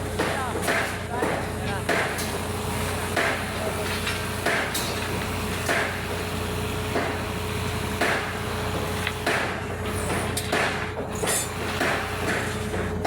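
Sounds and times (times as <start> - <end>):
construction knocks and scrapes: 8.7 - 13.0.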